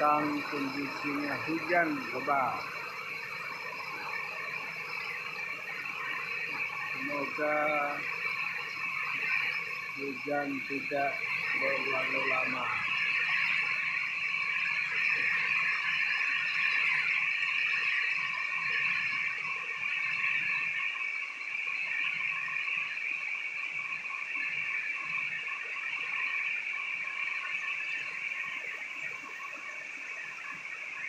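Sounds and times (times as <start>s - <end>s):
heavy rain falling: 0.0s - 2.7s.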